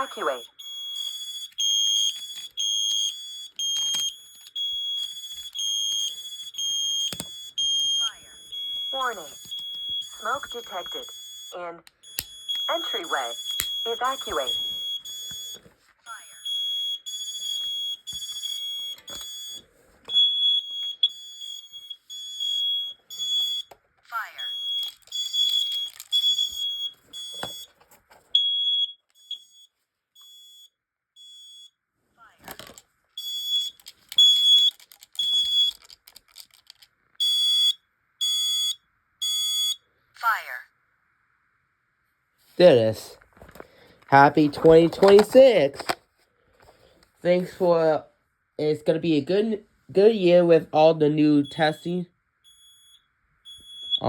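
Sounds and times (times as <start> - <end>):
pulsing alarm: 0.0 - 27.7, 28.3 - 31.7, 33.2 - 35.8, 37.2 - 40.6, 50.4 - 54.0
smoke alarm beeping: 0.0 - 27.7, 28.3 - 31.8, 33.2 - 35.9, 37.2 - 40.4, 50.0 - 54.0.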